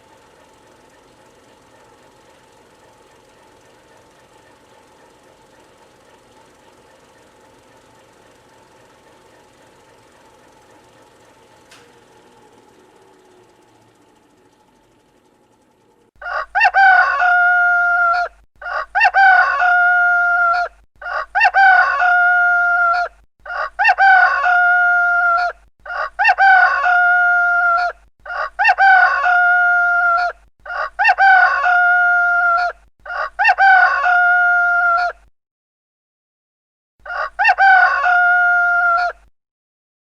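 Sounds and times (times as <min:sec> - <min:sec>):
rooster crowing: 0:16.2 - 0:35.2, 0:37.0 - 0:39.2.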